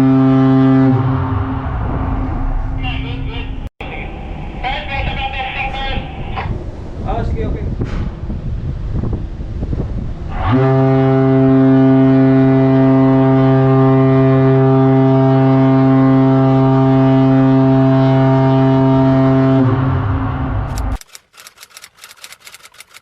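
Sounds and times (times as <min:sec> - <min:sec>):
ship's horn blast: 0:00.0 - 0:06.6, 0:10.2 - 0:20.7.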